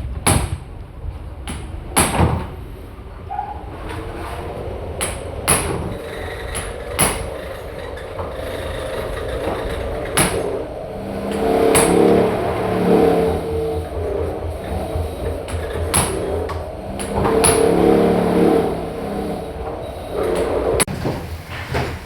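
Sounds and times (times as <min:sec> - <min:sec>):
sharp knocks: 0:00.0 - 0:00.8, 0:01.4 - 0:02.6, 0:05.0 - 0:19.3
vehicle engine rumbling: 0:00.0 - 0:22.0.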